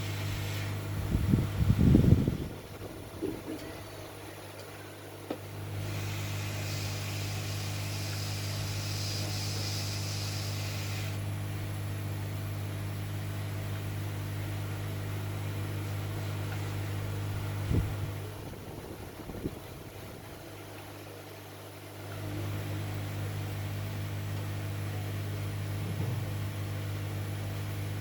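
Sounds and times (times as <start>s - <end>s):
hot air station hum: 0.0s - 28.0s
airy hiss: 5.8s - 11.3s.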